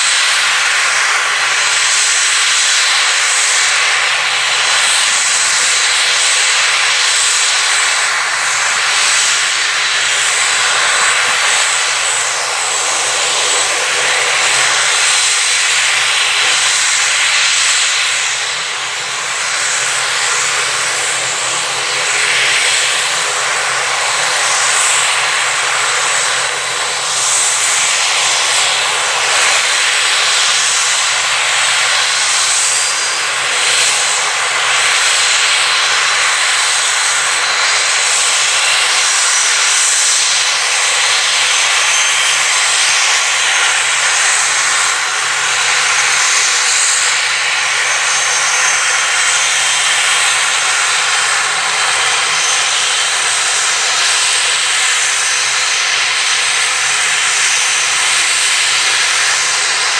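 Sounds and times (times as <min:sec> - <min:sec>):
turbine aircraft engine roar: 0:00.0 - 0:59.9
high whining tones: 0:38.5 - 0:56.9.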